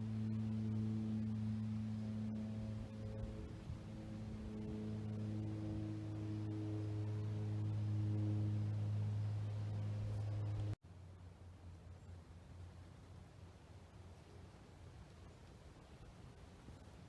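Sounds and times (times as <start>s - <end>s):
ambient music drone: 0.0s - 10.8s.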